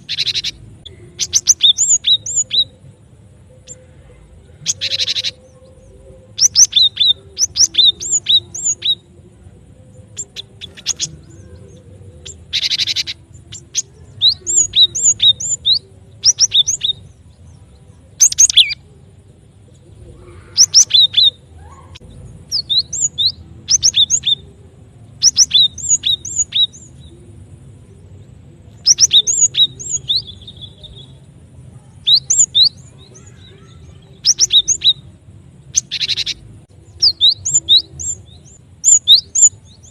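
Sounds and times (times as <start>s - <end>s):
harsh buzzy bird calls: 0.0s - 2.8s, 3.6s - 18.9s, 25.2s - 27.0s, 28.8s - 39.9s.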